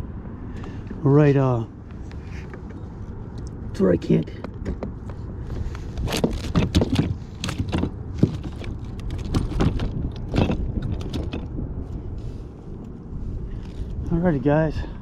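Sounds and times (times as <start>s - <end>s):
wind rumbling on microphone: 4.8s - 15.0s
rustles: 4.9s - 14.5s.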